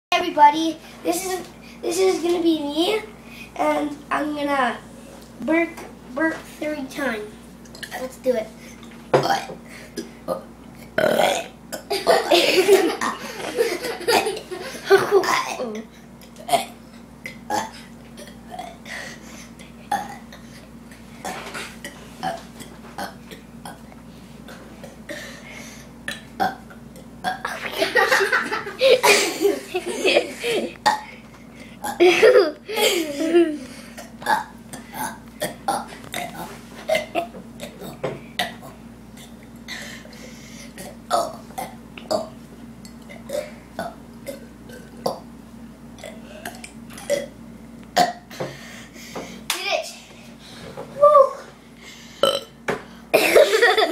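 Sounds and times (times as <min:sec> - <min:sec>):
person burping: 0:09.2 - 0:12.0, 0:16.5 - 0:18.8, 0:19.9 - 0:20.4, 0:26.1 - 0:27.7, 0:30.8 - 0:31.1, 0:31.8 - 0:32.2, 0:34.0 - 0:39.4, 0:40.8 - 0:42.3, 0:43.1 - 0:45.2, 0:46.0 - 0:47.4, 0:48.0 - 0:48.4, 0:52.2 - 0:52.6.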